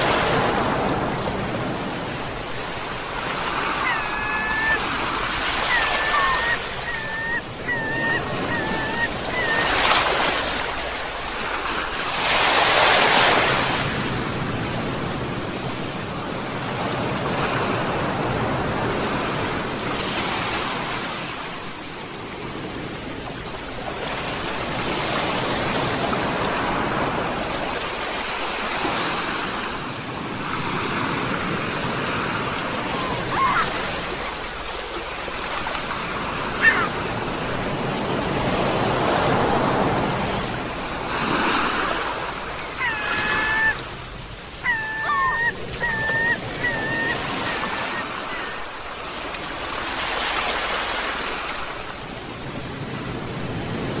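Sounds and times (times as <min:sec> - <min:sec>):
ocean surf washing in and out: 0:00.0 - 0:54.0
seagulls calling: 0:03.2 - 0:11.1, 0:32.4 - 0:34.8, 0:35.6 - 0:37.3, 0:42.0 - 0:49.1.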